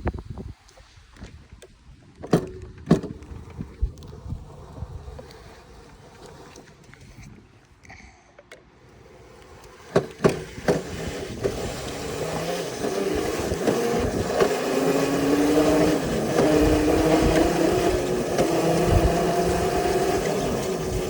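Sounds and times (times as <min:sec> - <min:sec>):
wind rush: 0:00.0 - 0:01.5
bike tyres rolling: 0:00.0 - 0:07.7, 0:08.9 - 0:21.0
wavering hum: 0:09.1 - 0:21.0.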